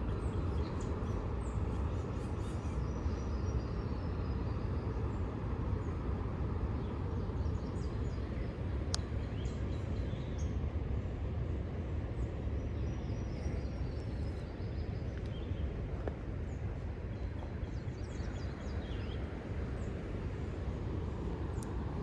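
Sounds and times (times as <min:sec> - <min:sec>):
birds chirping: 0:13.2 - 0:20.1.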